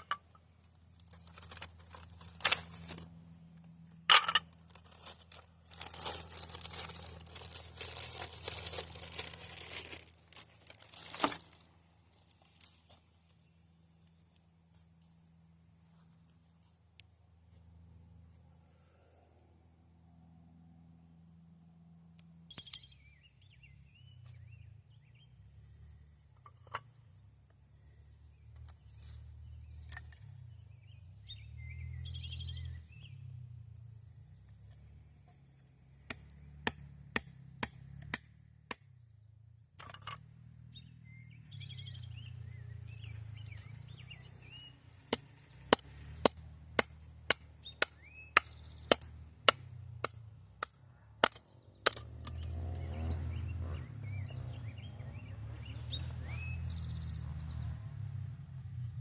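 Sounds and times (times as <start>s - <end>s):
low outdoor rumble: 0.0s - 59.0s
birds chirping: 22.5s - 25.4s, 27.8s - 33.3s, 40.7s - 46.0s, 47.6s - 49.2s, 51.4s - 57.7s.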